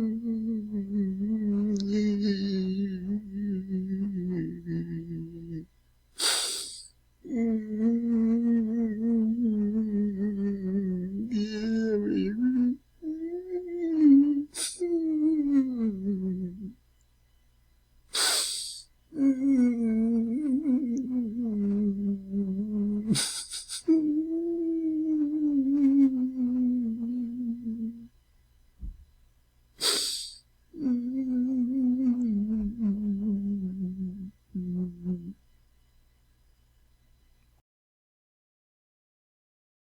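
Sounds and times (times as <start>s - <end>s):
man moaning and crying: 0.0s - 5.6s, 6.4s - 16.8s, 18.3s - 28.1s, 29.9s - 35.3s.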